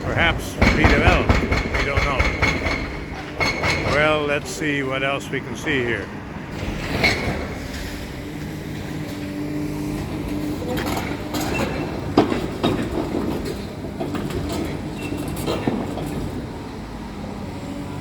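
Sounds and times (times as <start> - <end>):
building crashing and knocking: 0.0 - 4.4
demolition machinery diesel drone: 0.0 - 18.0.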